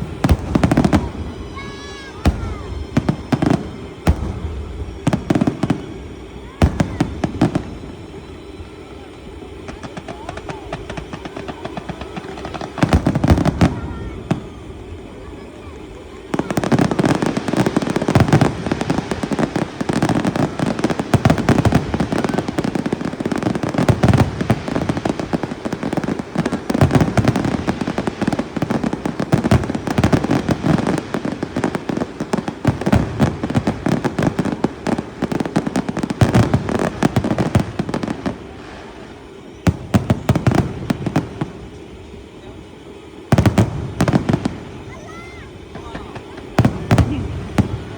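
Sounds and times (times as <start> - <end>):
fireworks bangs and crackles: 0.0 - 47.9.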